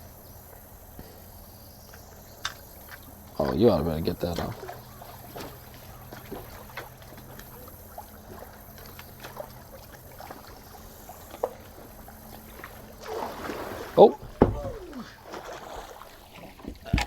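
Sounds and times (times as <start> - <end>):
faint low hum: 0.0 - 17.0
light taps and clicks in boat: 0.0 - 17.0.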